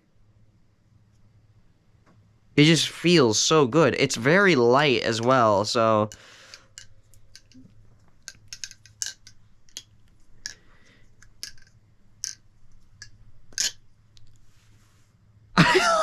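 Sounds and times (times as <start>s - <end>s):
butterfly knife handles clicking: 6.1s - 12.4s, 13.0s - 14.3s.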